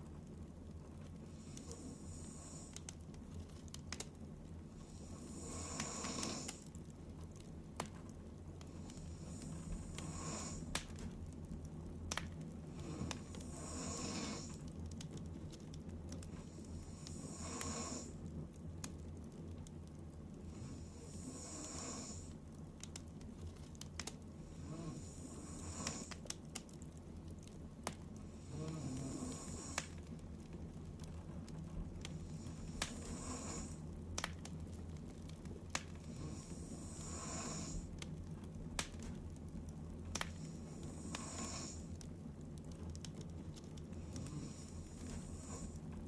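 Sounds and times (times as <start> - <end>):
steady low hum: 0.0 - 46.0
woman snoring: 5.0 - 6.6, 9.9 - 10.6, 12.8 - 14.5, 16.9 - 18.1, 20.6 - 22.3, 28.4 - 29.8, 32.9 - 33.8, 36.2 - 37.8, 40.9 - 41.8.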